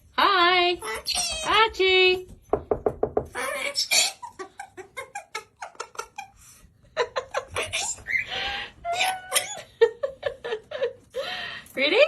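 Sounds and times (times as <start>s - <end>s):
parrot chattering and squawking: 3.4s - 4.4s, 7.5s - 9.7s.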